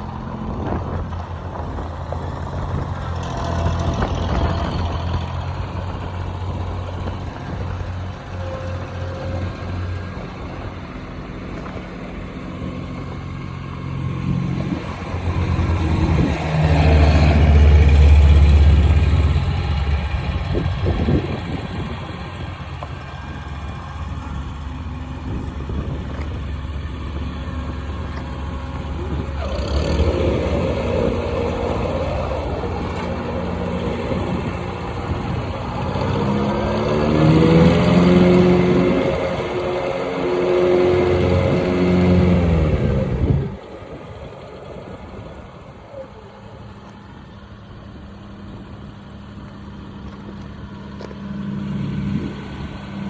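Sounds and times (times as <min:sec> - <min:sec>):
riding mower engine running: 0:00.0 - 0:53.0.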